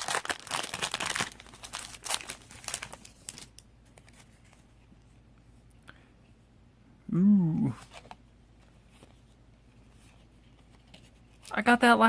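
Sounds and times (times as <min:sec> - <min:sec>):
foil wrapper crinkling and tearing: 0:00.0 - 0:04.3.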